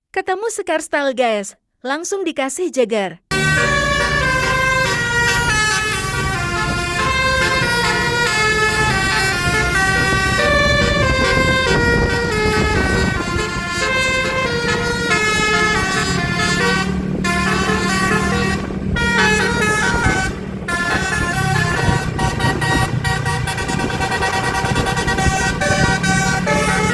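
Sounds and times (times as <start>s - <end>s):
bus engine running: 3.3s - 26.9s
musical air horn tune: 3.3s - 26.9s.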